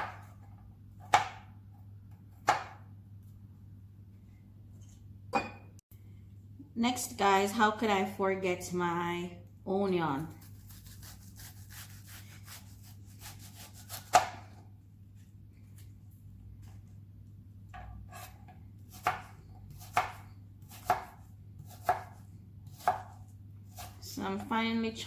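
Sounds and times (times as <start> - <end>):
knife chopping on cutting board: 0.0 - 0.4, 1.0 - 1.6, 2.3 - 2.8, 10.4 - 14.6, 17.7 - 24.0.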